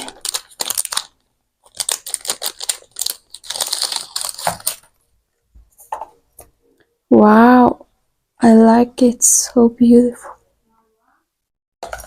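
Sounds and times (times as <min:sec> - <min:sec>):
packaging crinkling: 0:00.0 - 0:05.0.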